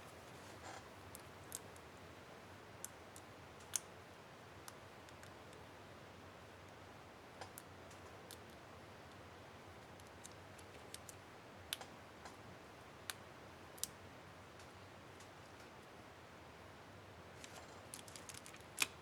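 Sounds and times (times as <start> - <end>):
small plastic clicks: 17.4 - 19.0.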